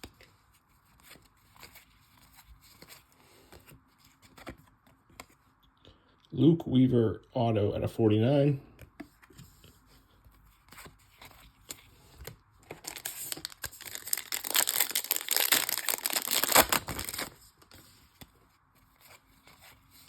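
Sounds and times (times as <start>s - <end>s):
foil wrapper tearing and crinkling: 12.7s - 17.4s.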